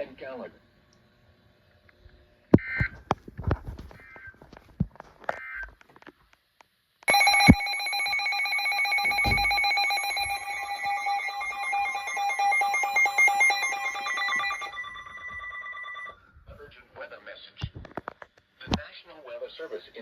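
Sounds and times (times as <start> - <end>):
harsh two-tone alarm: 7.1 - 16.2.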